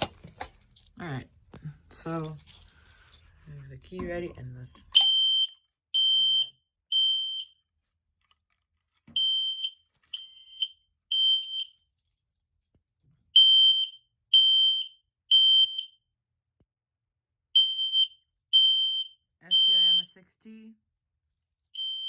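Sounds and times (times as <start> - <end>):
fire alarm horn beeps: 5.0 - 7.6, 9.2 - 11.7, 13.4 - 16.0, 17.6 - 20.2, 21.8 - 22.0.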